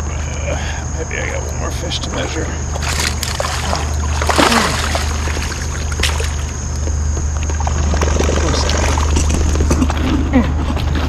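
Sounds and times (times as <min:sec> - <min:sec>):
water splashing beside a kayak: 0:02.7 - 0:06.8
low rumble: 0:02.7 - 0:11.0.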